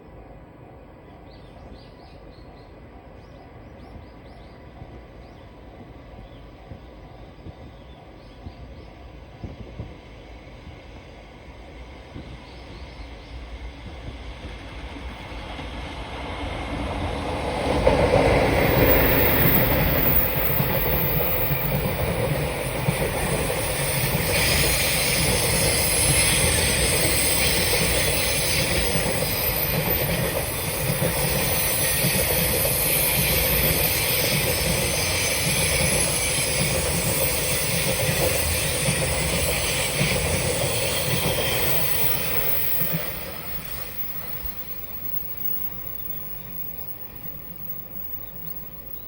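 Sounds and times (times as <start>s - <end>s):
freight train wagons rolling past: 11.5s - 49.0s
wheel-on-rail hissing: 17.9s - 48.9s.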